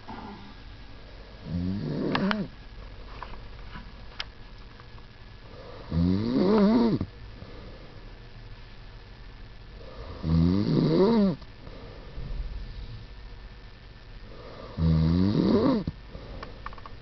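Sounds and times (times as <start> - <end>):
person snoring: 1.4 - 2.5, 5.5 - 7.1, 9.8 - 11.4, 14.3 - 15.9.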